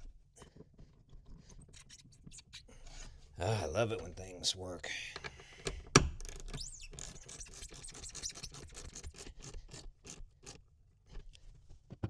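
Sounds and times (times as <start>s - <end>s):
hand tool ratchet clicks: 6.2s - 10.6s.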